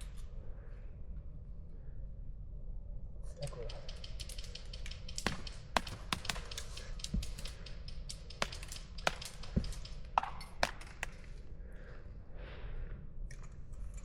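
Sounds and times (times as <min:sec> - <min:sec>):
airsoft guns firing: 0:03.8 - 0:11.3.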